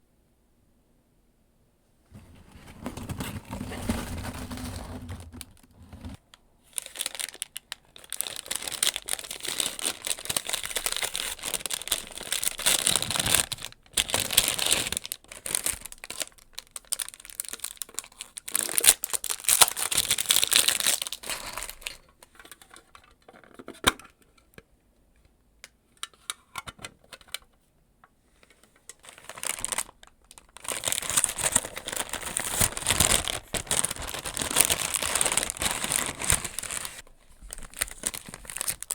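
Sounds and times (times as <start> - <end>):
packaging crinkling and tearing: 2.2 - 22.0, 28.9 - 38.9.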